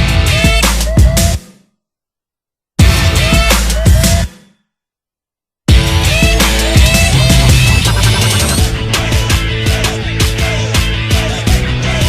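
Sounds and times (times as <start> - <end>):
electronic music with heavy bass: 0.0 - 1.4, 2.8 - 4.3, 5.7 - 12.0.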